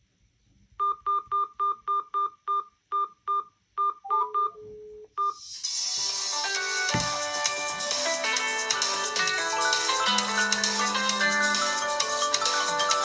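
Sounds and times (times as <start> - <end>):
ringtone music: 5.3 - 13.0.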